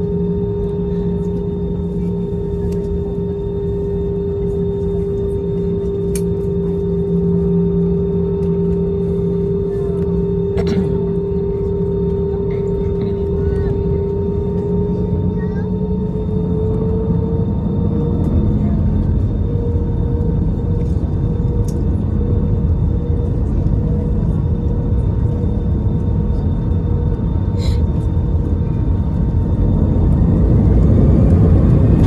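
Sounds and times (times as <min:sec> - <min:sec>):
aircraft cabin rumble: 0:00.0 - 0:32.0
jet engine whine: 0:00.0 - 0:32.0.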